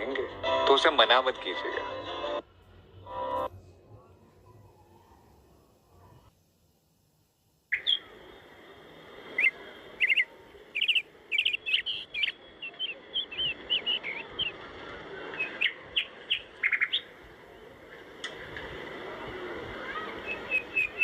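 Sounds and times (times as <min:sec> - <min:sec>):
steady background hiss: 0:02.2 - 0:21.0
birds chirping: 0:07.7 - 0:18.0, 0:19.8 - 0:21.0.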